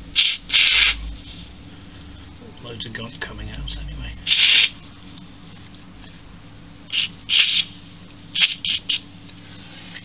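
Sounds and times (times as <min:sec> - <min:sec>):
aerosol can hissing: 0:00.2 - 0:01.0, 0:04.3 - 0:04.7, 0:06.9 - 0:07.7.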